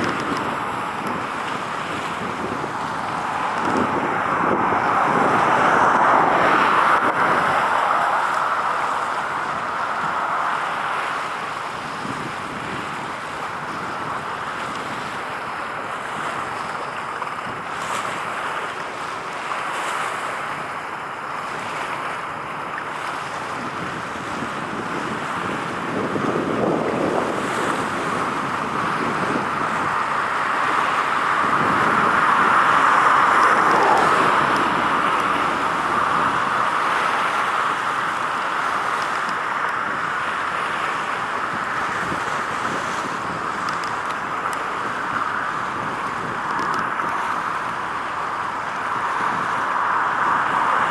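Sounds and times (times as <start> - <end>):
outdoor rushing noise: 26.6 - 39.5.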